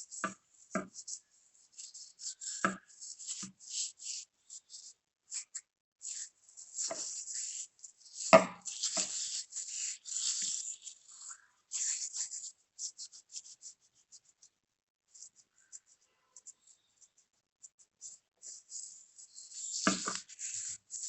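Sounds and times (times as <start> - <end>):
gritty scrub rubbed on hands: 1.7 - 13.8.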